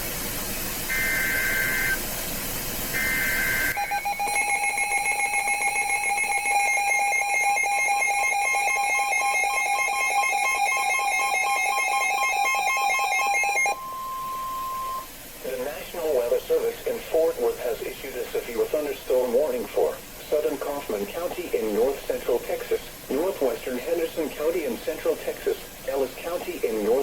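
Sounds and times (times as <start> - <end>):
shrill two-tone attention signal: 0.9 - 2.0, 3.0 - 15.1
warbling data bursts: 0.9 - 2.0, 3.0 - 15.1.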